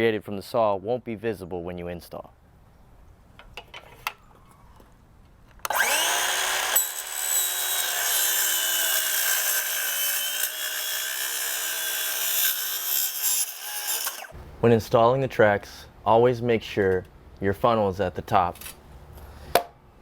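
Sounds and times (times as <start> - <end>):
power saw whining: 5.6 - 14.4.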